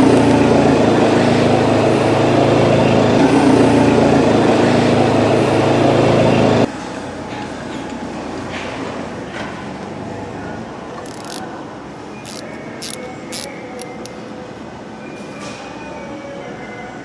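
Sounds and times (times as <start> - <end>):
engine running steadily: 0.0 - 11.4.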